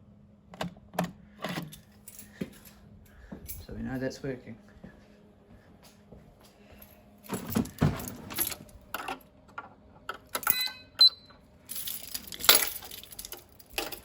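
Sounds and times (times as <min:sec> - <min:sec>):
knocks and rattles: 0:07.3 - 0:09.2
ringing metallic clinks: 0:10.4 - 0:14.0.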